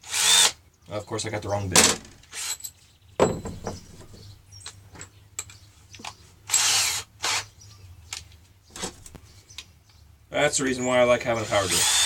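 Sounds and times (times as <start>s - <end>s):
drill chuck ratcheting: 11.5s - 12.0s.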